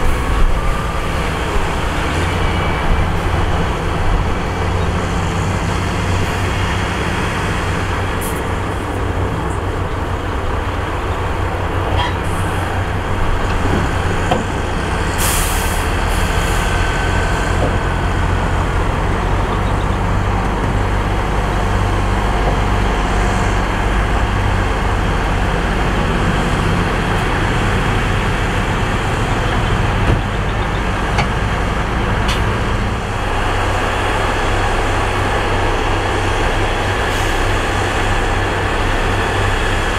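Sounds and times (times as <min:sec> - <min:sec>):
heavy diesel machinery rumbling: 0:00.0 - 0:39.9
air hiss: 0:15.2 - 0:16.6.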